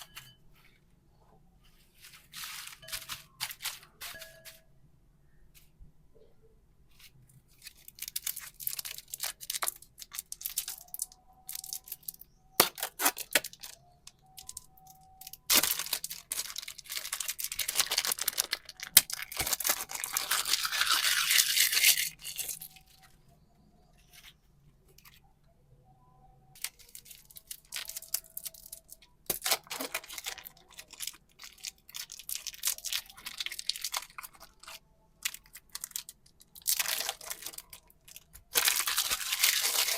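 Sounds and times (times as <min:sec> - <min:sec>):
packaging crinkling and tearing: 0:07.5 - 0:23.0, 0:26.6 - 0:39.9.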